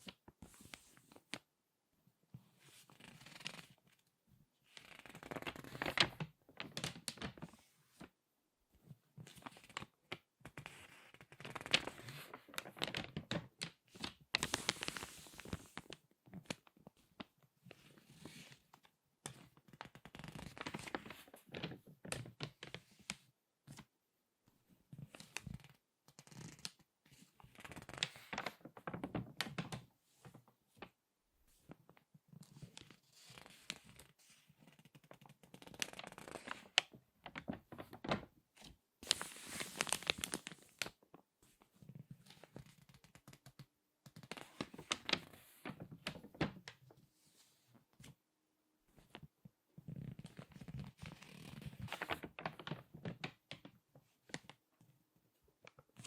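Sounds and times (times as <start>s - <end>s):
magazine pages crackling: 11.4s - 16.6s, 19.9s - 22.8s, 27.6s - 30.9s, 34.7s - 41.0s, 42.2s - 46.8s, 50.2s - 53.7s.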